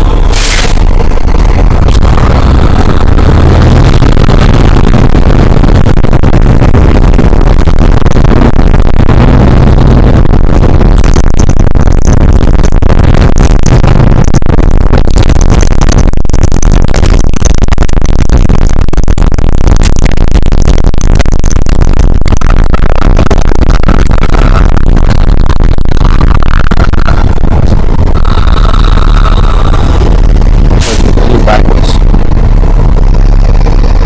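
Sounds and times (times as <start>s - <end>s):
harsh distorted electronic noise music: 0.0s - 34.0s.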